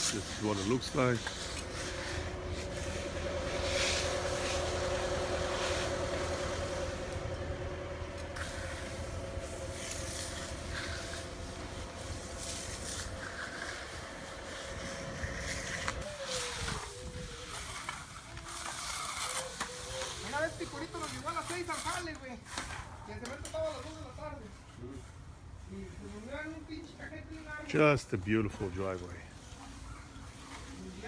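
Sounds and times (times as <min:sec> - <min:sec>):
engine humming: 0:00.0 - 0:21.6.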